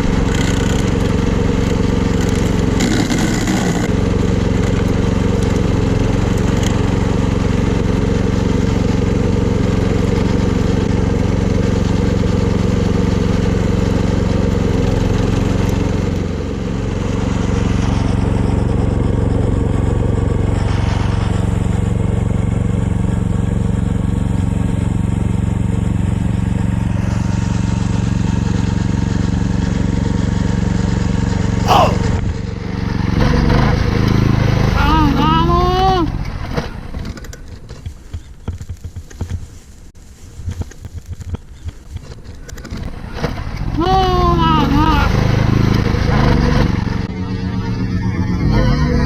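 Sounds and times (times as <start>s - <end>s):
mower engine running: 0.0s - 31.0s.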